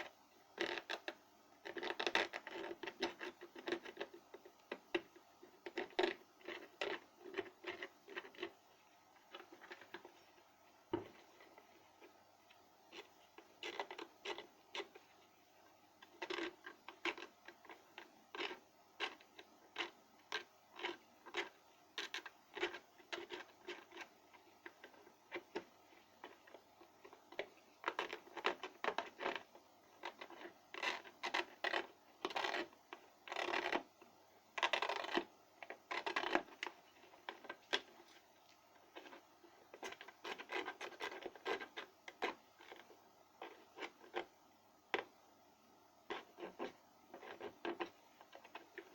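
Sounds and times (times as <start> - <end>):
small hard parts clicking and scraping: 16.0 - 33.9.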